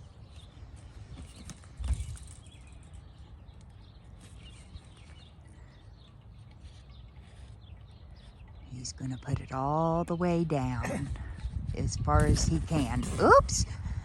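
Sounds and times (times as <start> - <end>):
small birds chirping: 0.0 - 13.8
wind buffeting microphone: 6.9 - 14.0.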